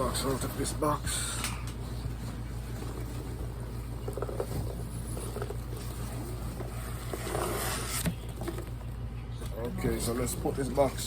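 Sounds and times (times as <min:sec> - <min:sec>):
cardboard box scraping and rustling: 0:01.9 - 0:08.7.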